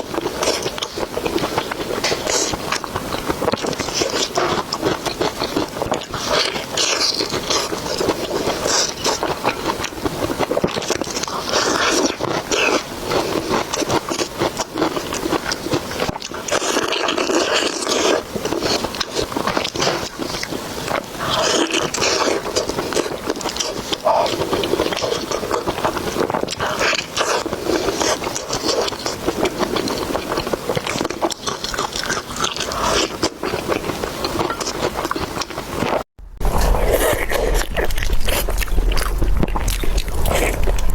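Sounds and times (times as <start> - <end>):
person chewing food: 0.0 - 40.9.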